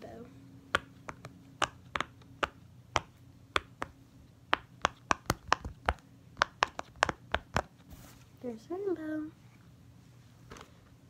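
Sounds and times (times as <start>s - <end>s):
fidget toy popping: 0.7s - 7.7s.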